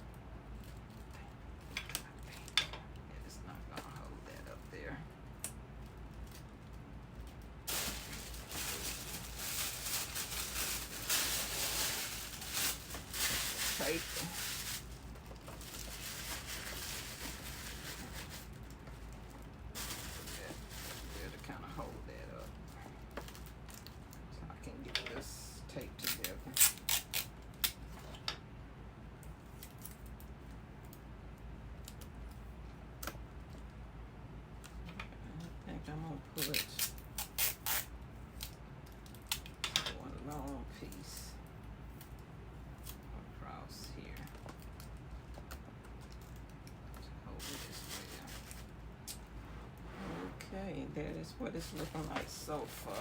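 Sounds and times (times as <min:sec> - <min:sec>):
low steady hum: 0:00.0 - 0:53.0
paper crinkling and rustling: 0:07.3 - 0:22.0, 0:47.4 - 0:48.7, 0:51.6 - 0:53.0.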